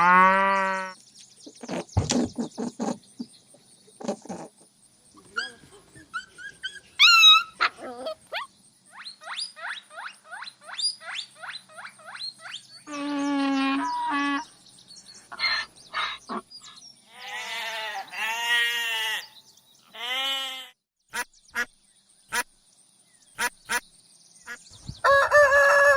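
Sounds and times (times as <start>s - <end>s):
animal cries: 5.2s - 8.5s, 17.1s - 20.8s
animal squeaking: 5.2s - 14.5s.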